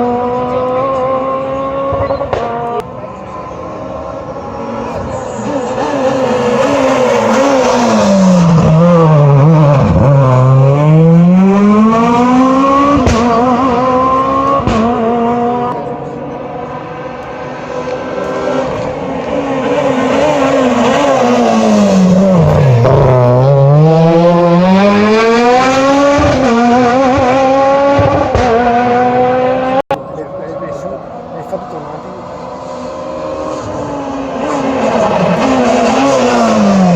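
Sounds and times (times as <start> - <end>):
rally car engine revving: 0.0 - 36.9
car braking with engine revs falling: 17.1 - 29.8.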